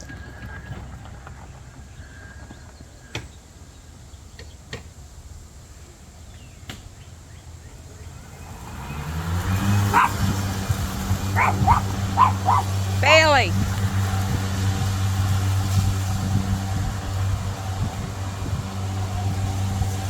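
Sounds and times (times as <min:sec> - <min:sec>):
dog barking: 0:09.6 - 0:13.4.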